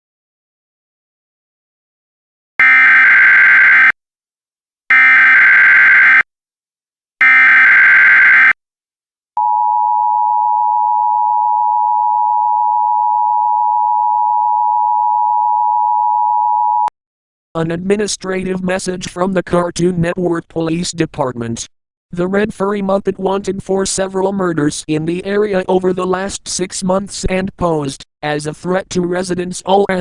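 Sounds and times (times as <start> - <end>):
two-tone alert signal: 2.6 - 3.9, 4.9 - 6.2, 7.2 - 8.5.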